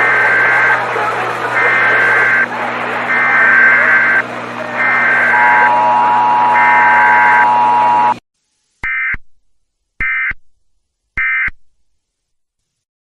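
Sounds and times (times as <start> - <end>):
warbling digital data tones: 0.0 - 2.5, 3.1 - 4.2, 4.8 - 8.2
buzzing steady tone: 0.0 - 8.2.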